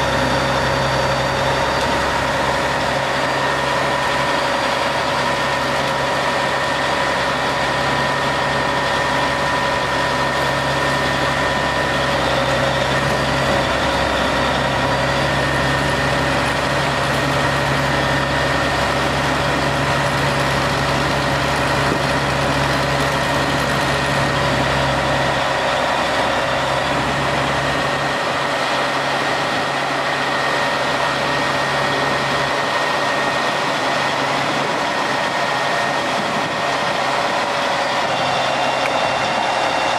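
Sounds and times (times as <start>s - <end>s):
engine running: 0.0s - 39.9s.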